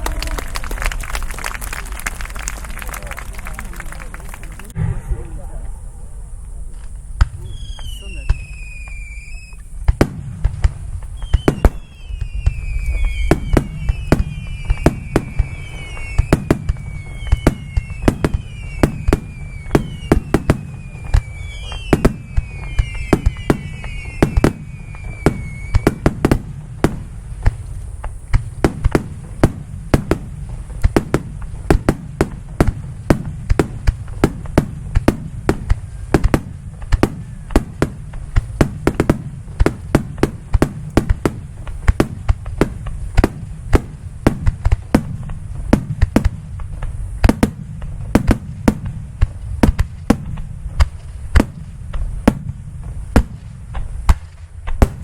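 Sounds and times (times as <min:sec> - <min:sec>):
firework whistles gliding down: 0:00.0 - 0:55.0
low rumble: 0:04.0 - 0:07.4.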